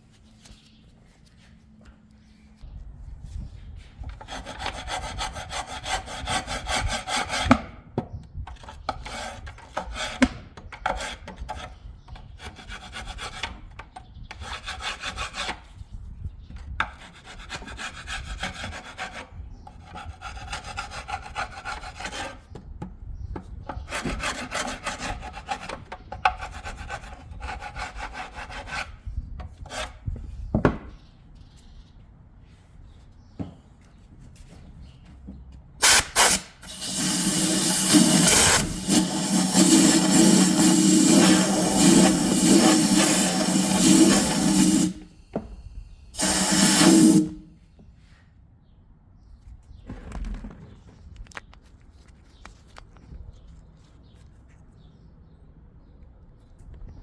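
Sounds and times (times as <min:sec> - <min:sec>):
rasping scrubbing strokes: 0:35.8 - 0:45.1, 0:46.2 - 0:47.5.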